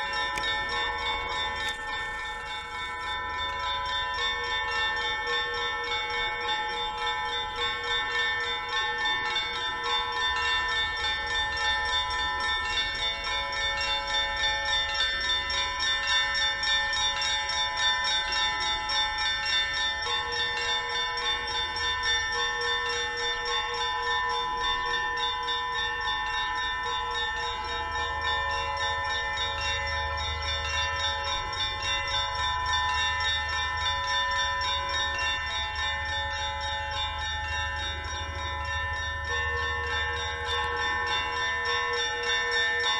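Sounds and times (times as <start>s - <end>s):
church bells pealing: 0.0s - 42.9s.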